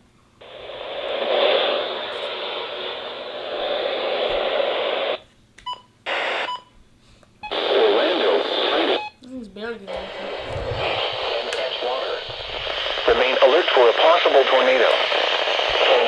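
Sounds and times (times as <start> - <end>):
radio static hiss: 0.4 - 5.2, 6.1 - 6.5, 7.4 - 16.0.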